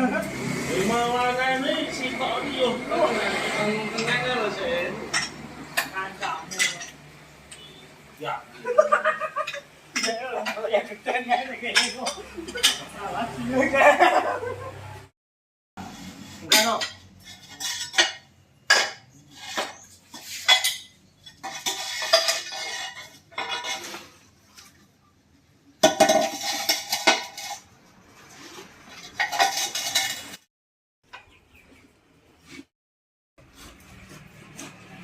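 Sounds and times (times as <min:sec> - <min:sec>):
metal objects clinking: 0:05.1 - 0:07.0, 0:16.4 - 0:24.1, 0:25.8 - 0:27.7, 0:28.9 - 0:30.4.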